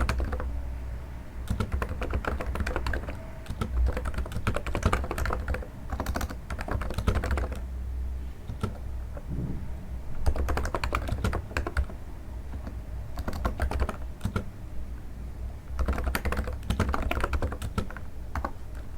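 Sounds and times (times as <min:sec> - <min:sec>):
soft keyboard keystrokes: 0:00.0 - 0:00.5, 0:01.5 - 0:07.6, 0:10.2 - 0:14.5, 0:15.8 - 0:18.9
low steady hum: 0:00.0 - 0:18.9.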